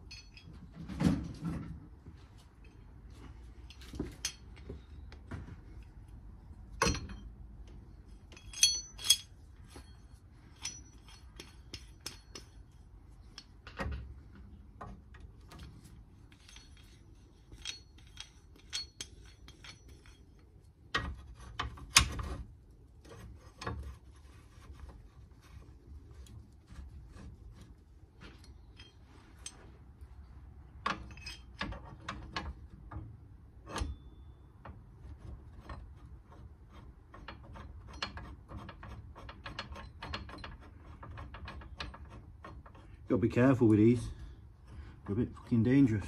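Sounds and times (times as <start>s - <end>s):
metal tools clinking and knocking: 0.0s - 1.6s, 3.6s - 5.0s, 6.8s - 22.2s, 28.2s - 29.8s, 30.7s - 33.1s.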